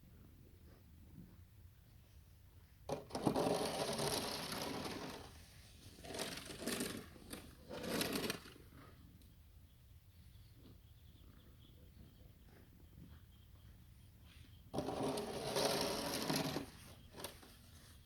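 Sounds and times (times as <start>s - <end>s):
snow shovel scraping snow: 3.1s - 8.6s, 14.8s - 17.4s.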